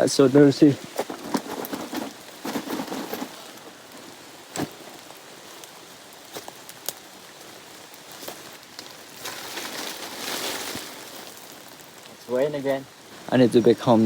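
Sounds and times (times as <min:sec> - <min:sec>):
rain falling on forest: 0:00.0 - 0:14.0.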